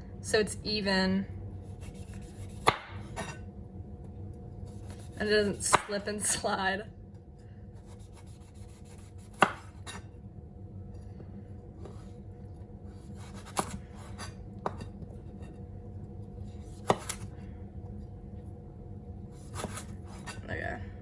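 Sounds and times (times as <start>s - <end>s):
steady low hum: 0.0s - 21.0s.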